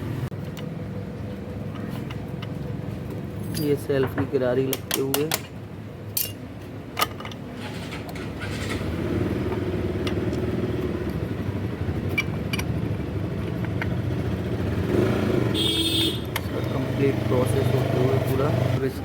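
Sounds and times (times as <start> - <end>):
small motorbike engine running: 7.6 - 18.8.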